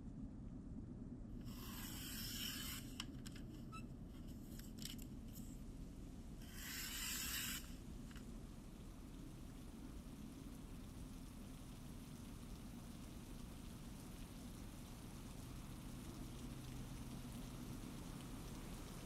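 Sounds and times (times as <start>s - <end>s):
rasping strokes: 1.5s - 3.0s, 6.4s - 7.8s.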